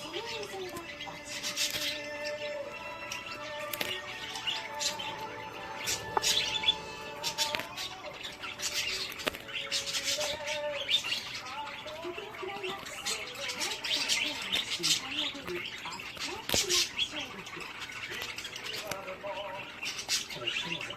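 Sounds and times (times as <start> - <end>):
birds chirping: 0.0 - 20.9.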